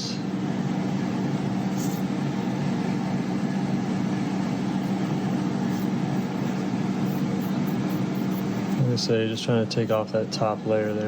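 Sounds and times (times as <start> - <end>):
low machine hum with buzzing: 0.0 - 11.0.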